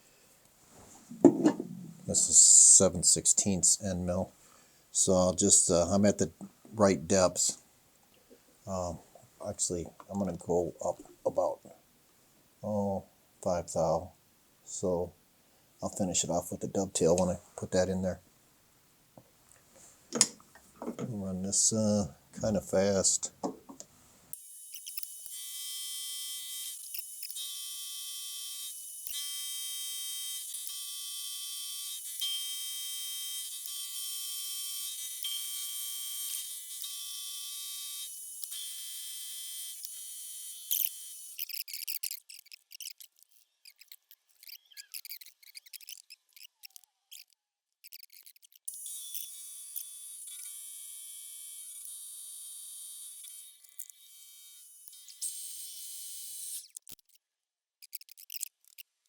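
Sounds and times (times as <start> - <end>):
choppy hiss: 0.6 - 4.3, 19.7 - 24.3.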